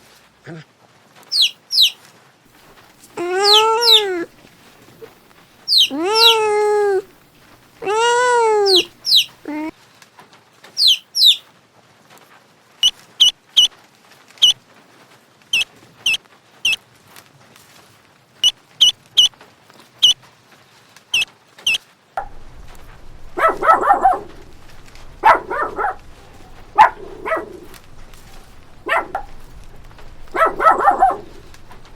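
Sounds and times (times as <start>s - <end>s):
harsh bark-like calls: 1.3s - 2.0s, 2.6s - 9.7s, 21.7s - 31.9s
drawn-out animal call: 2.6s - 9.7s, 22.2s - 31.9s.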